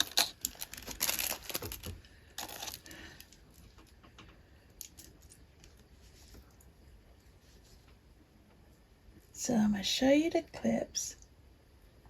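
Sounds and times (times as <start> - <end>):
packaging crinkling: 0.0 - 3.9.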